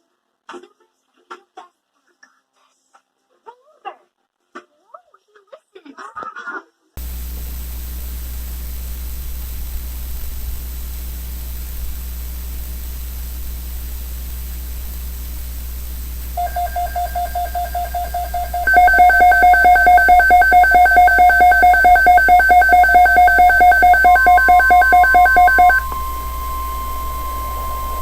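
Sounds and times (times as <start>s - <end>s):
radio hiss: 7.0s - 28.0s
steady single-pitch alarm tone: 16.3s - 28.0s
rapid electronic alert beeping: 16.4s - 28.0s.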